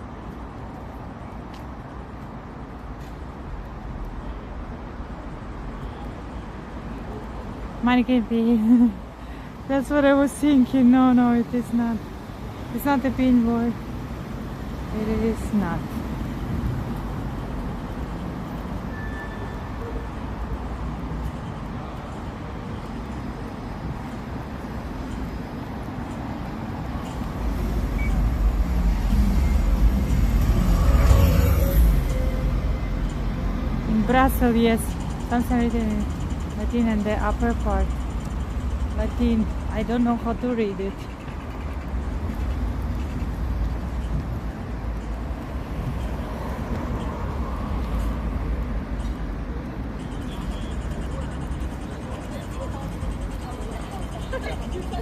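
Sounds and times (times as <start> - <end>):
road traffic rumble: 0.0 - 55.0
vehicle passing close: 27.3 - 33.9.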